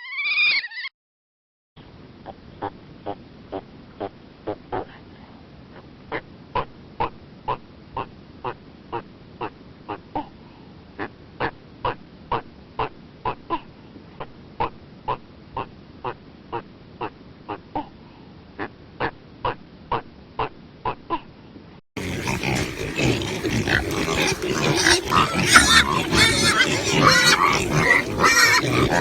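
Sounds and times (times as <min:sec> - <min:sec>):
animal giving short calls: 0:22.0 - 0:29.0.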